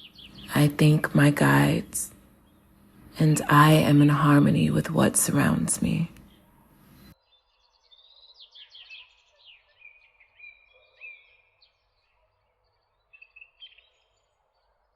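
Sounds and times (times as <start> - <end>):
faint background hiss: 0.0 - 7.2
songbirds chirping and trilling: 0.0 - 14.9.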